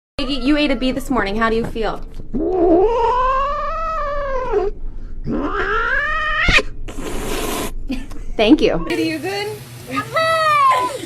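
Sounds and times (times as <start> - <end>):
cat yowling meows: 0.2 - 1.4, 2.4 - 4.7, 5.3 - 6.6.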